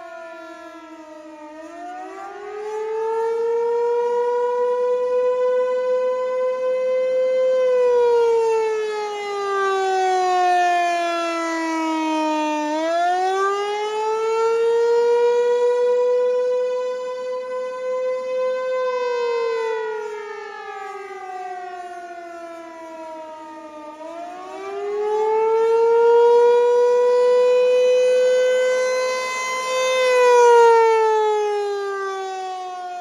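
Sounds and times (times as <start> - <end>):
warning siren slow wail: 0.0 - 33.0.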